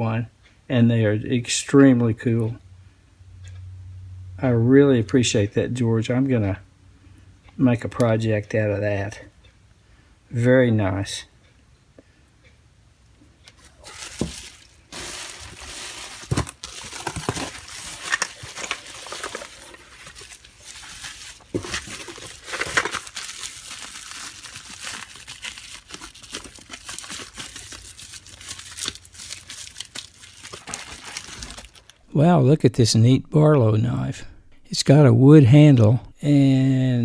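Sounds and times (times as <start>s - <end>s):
packing material crumpling: 13.6s - 32.0s.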